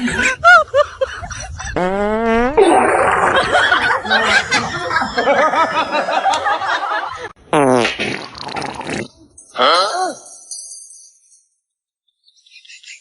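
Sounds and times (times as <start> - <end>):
crowd laughing: 0.0 - 1.8, 3.1 - 7.4.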